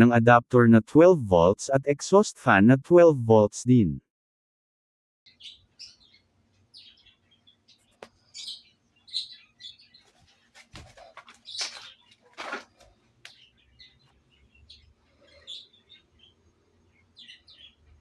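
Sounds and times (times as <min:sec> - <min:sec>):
small birds chirping: 0:05.3 - 0:18.0.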